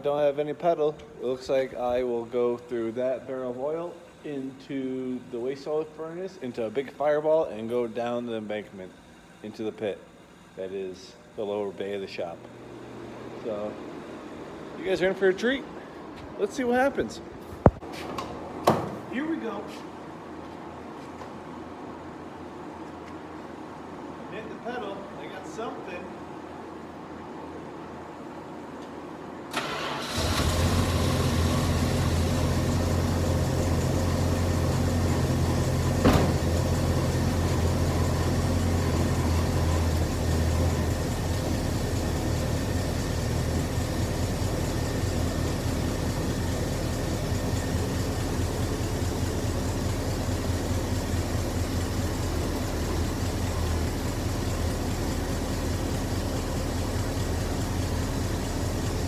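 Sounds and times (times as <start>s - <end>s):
car engine idling: 29.5s - 59.0s.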